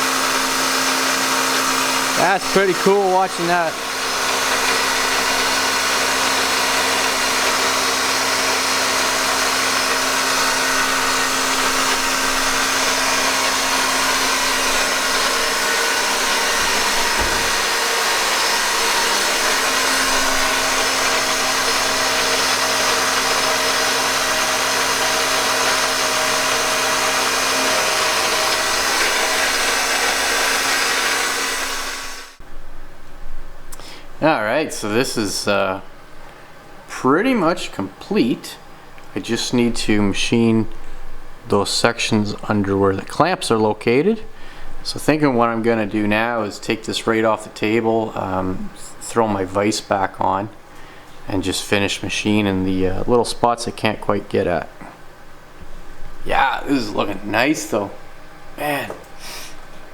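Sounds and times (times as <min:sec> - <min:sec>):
end mill cutting metal: 0:00.0 - 0:32.4, 0:56.4 - 0:59.9
milling machine whine: 0:00.0 - 0:32.4, 0:56.1 - 0:59.9.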